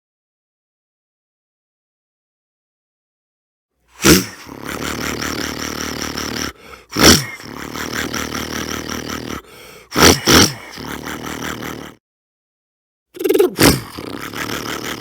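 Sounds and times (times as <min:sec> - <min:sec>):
man imitating an engine: 0:04.0 - 0:12.0, 0:13.2 - 0:15.0.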